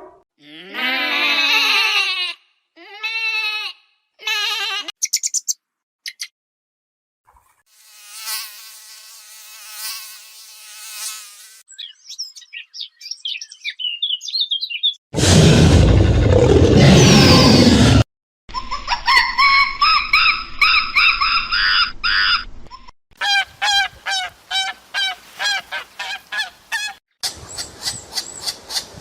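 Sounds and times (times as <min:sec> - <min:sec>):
bird chirps: 0:05.0 - 0:06.3, 0:11.7 - 0:15.0
buzzing insect drone: 0:07.7 - 0:11.6
geese honking: 0:23.2 - 0:27.0.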